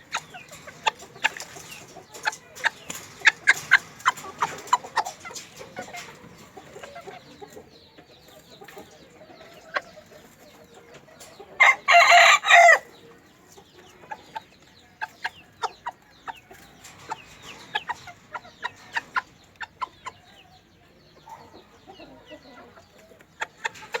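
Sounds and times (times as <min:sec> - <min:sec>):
chickens clucking: 0:00.0 - 0:24.0
rooster crowing: 0:11.6 - 0:12.8.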